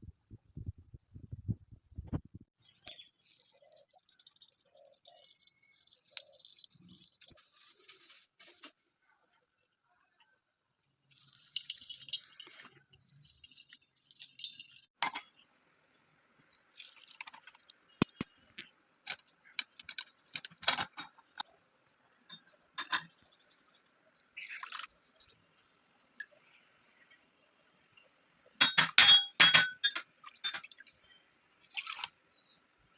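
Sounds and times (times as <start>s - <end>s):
liquid pouring and splashing: 2.6s - 8.2s, 11.1s - 15.0s, 16.6s - 18.4s, 24.4s - 25.4s, 31.6s - 32.2s
glass and metal vessels clinking: 15.0s - 15.4s, 22.3s - 23.2s, 28.6s - 30.7s.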